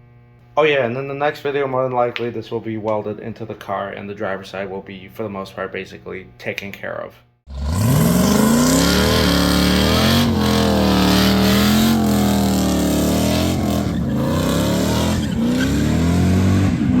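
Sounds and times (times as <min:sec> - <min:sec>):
car engine revving: 0:07.5 - 0:17.0.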